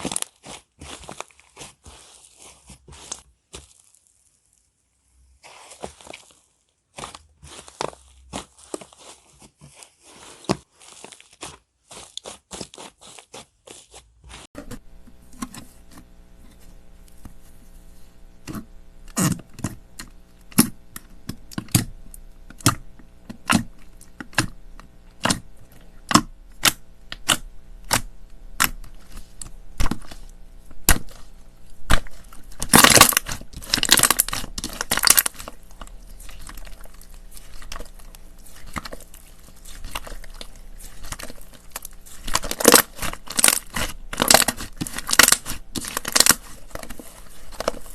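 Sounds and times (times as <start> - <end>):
slime popping and crackling: 0.0 - 1.7, 20.5 - 47.9
faint steady hum: 14.6 - 47.9.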